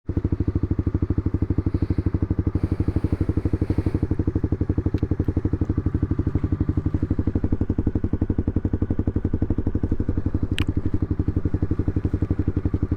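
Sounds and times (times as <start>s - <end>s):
motorcycle engine idling: 0.1s - 12.9s.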